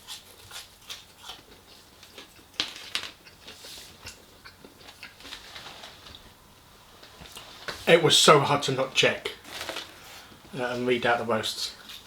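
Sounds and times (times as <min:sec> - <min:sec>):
crunchy chewing of fried chicken: 0:00.0 - 0:06.4.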